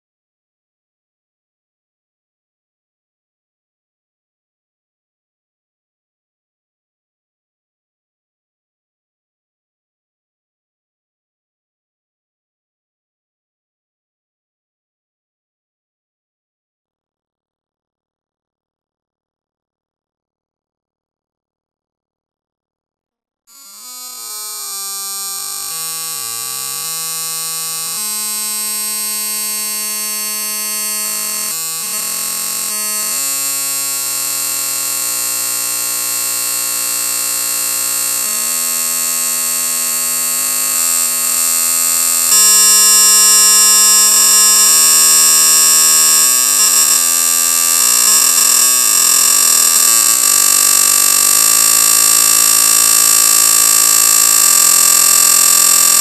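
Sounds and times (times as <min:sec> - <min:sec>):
ringing whirring tones: 0:23.9 - 0:56.0.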